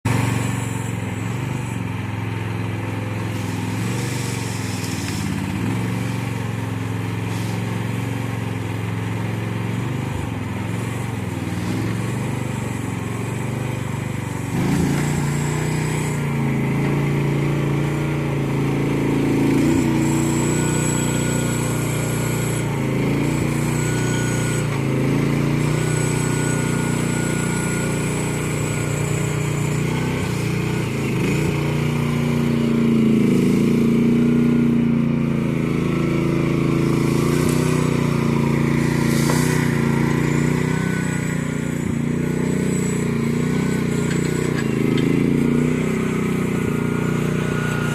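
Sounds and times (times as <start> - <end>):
excavator engine running: 0.0 - 47.9
thin high whines: 19.5 - 34.8, 35.8 - 47.9.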